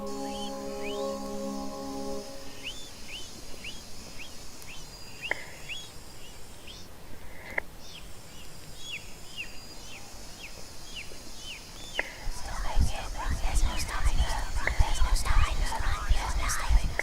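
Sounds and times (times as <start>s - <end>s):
bird descending chirp: 0.0s - 6.9s
light high hiss: 0.0s - 17.0s
sharp ticks: 3.1s - 5.9s, 14.2s - 15.5s.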